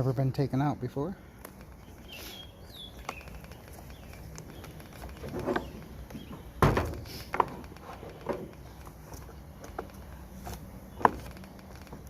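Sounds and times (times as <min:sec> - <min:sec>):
plastic housing creaking: 0:03.0 - 0:08.9, 0:10.9 - 0:12.0.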